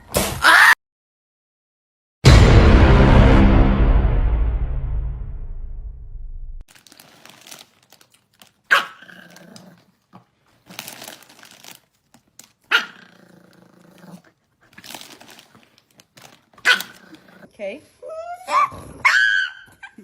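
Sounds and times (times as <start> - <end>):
dog barking and growling: 0.4 - 0.8, 8.6 - 10.1, 12.6 - 15.6, 16.2 - 20.0.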